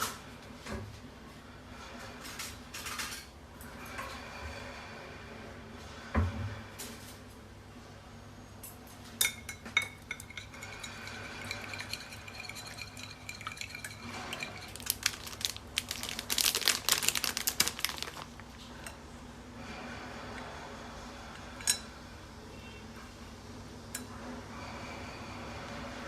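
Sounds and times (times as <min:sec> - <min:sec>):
dishes and cutlery clinking: 0:09.2 - 0:14.9.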